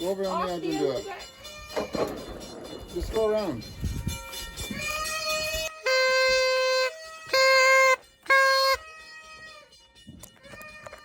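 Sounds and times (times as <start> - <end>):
party horn blasts: 4.5 - 9.2.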